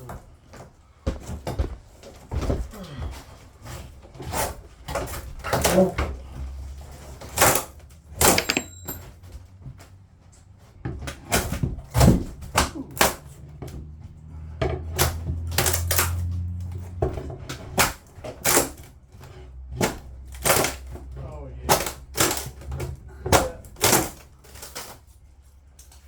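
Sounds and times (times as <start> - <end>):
demolition knocks and clatter: 0.0 - 9.8.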